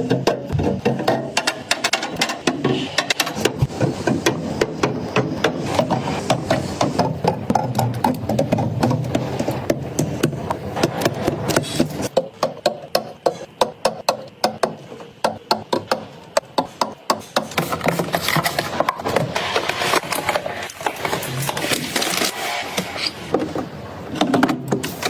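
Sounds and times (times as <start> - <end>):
hard objects knocking and clacking: 0.0 - 22.5.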